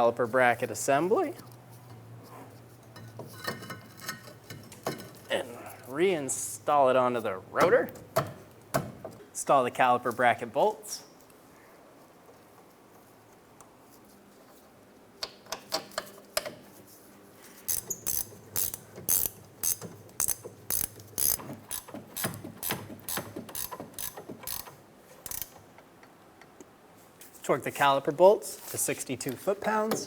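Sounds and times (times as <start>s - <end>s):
hand ratchet clicking: 17.7s - 25.6s.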